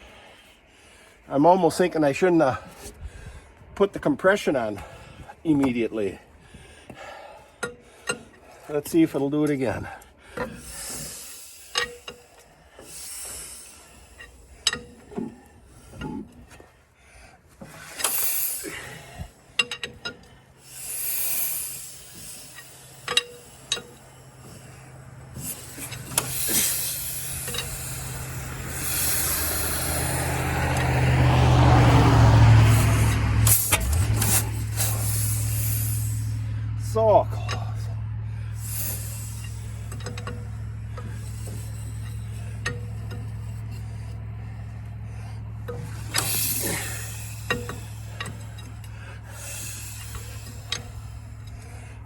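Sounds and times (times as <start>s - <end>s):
crank clicking and scraping: 3.6s - 52.0s
engine firing roughly: 17.7s - 52.0s.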